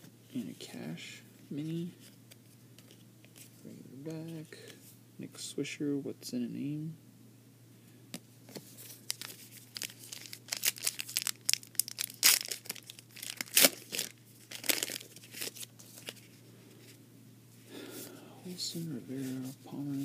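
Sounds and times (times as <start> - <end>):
foil wrapper tearing and crinkling: 8.8 - 16.2.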